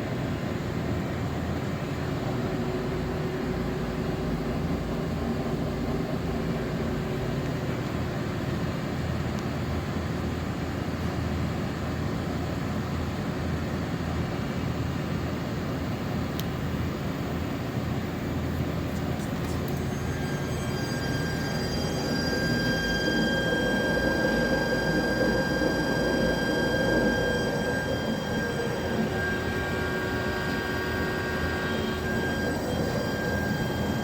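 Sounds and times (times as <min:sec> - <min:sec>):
machinery drone: 0:18.8 - 0:34.0.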